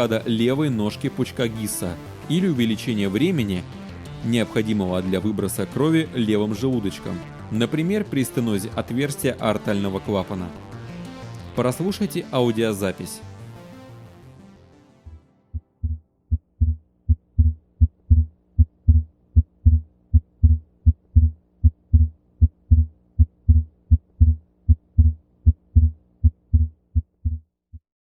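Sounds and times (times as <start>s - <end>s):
heartbeat lub-dub: 15.5s - 27.8s.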